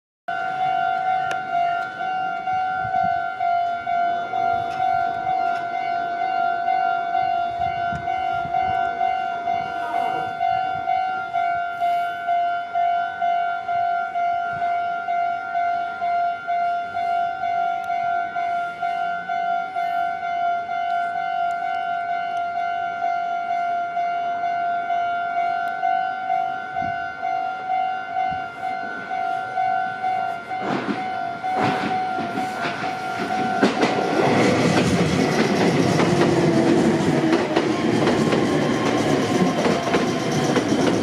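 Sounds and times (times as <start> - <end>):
railroad crossing warning bell: 0.3 - 41.0.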